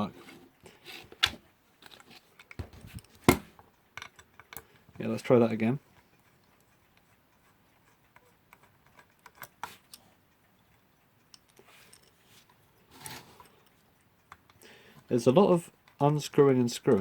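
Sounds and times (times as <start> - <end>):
screwdriver clicking and scraping: 6.4 - 10.0.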